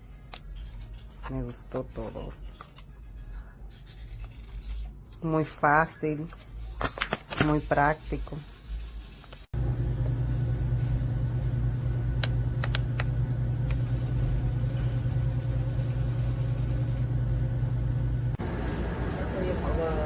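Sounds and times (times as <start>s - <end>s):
low mechanical hum: 9.6s - 20.0s.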